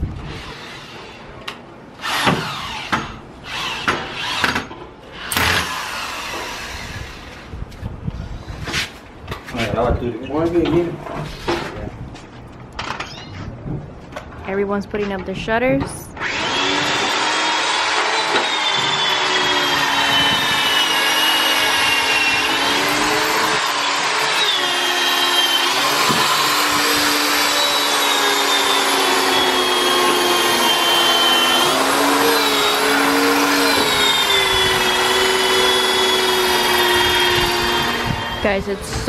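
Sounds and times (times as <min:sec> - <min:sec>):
electric power drill whining: 0:02.0 - 0:07.5, 0:16.2 - 0:39.0.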